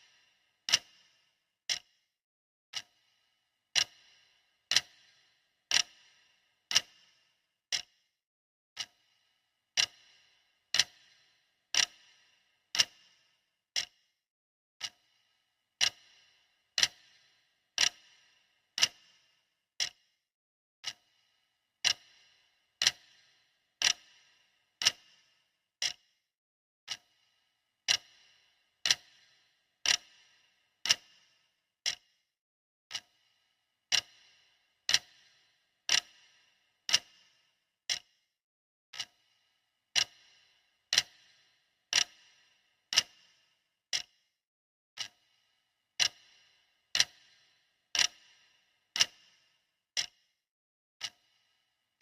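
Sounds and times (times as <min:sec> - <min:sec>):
clock ticking: 0:00.7 - 0:02.0, 0:02.7 - 0:03.1, 0:03.7 - 0:07.9, 0:08.8 - 0:09.0, 0:09.8 - 0:13.2, 0:15.8 - 0:19.2, 0:19.8 - 0:20.0, 0:20.8 - 0:21.1, 0:21.8 - 0:25.2, 0:25.8 - 0:26.1, 0:26.9 - 0:27.2, 0:27.8 - 0:32.2, 0:32.9 - 0:33.3, 0:33.9 - 0:38.2, 0:38.9 - 0:39.3, 0:39.9 - 0:44.2, 0:45.0 - 0:45.4, 0:46.0 - 0:50.3.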